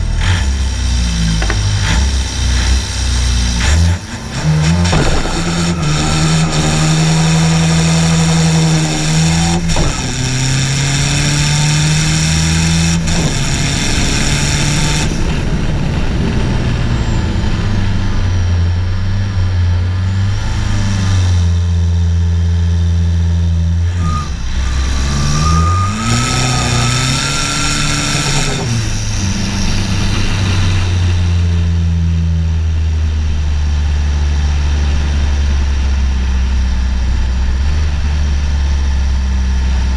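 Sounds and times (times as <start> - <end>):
car engines idling: 0.0 - 20.0
engine revving with whine: 0.0 - 39.9.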